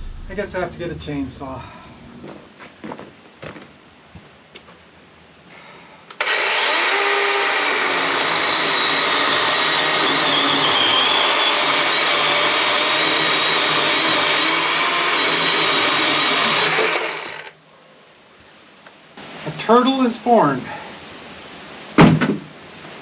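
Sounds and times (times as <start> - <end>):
chainsaw cutting wood: 6.2 - 17.6.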